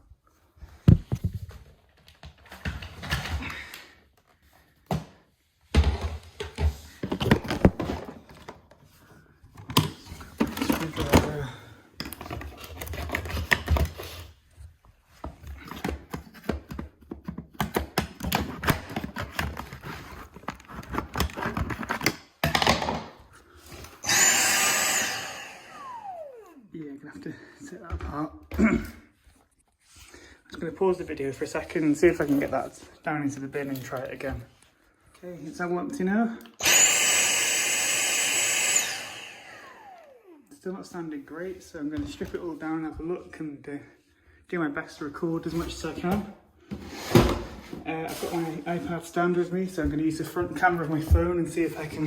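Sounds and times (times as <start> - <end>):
screwdriver scraping plastic: 12.0 - 14.3, 15.7 - 22.3.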